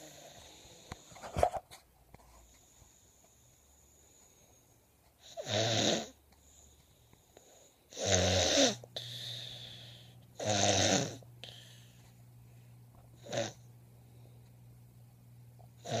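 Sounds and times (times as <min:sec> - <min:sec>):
breathy hiss: 0:00.0 - 0:01.2, 0:02.4 - 0:14.5
person snoring: 0:05.2 - 0:06.2, 0:07.9 - 0:11.8, 0:13.2 - 0:13.7, 0:15.8 - 0:16.0
steady low hum: 0:06.1 - 0:16.0.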